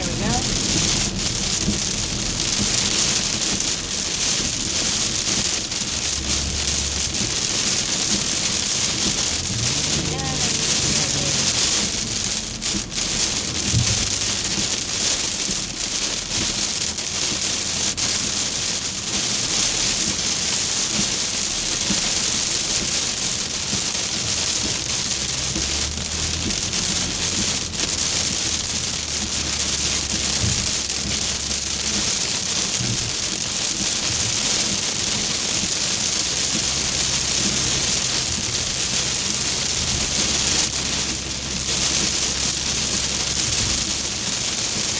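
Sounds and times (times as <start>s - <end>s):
heavy rain on car roof: 0.0s - 44.9s.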